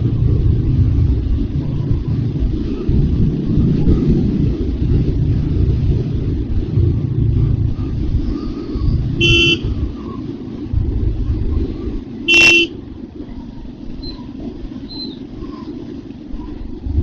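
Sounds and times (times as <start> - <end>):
motorcycle engine rumbling: 0.0 - 17.0
vehicle horn: 9.2 - 9.7, 12.3 - 12.8.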